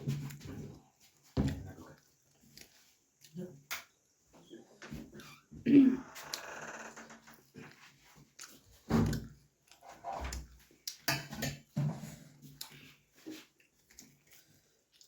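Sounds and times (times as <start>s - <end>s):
person chewing food: 0.2s - 4.2s, 7.3s - 15.0s.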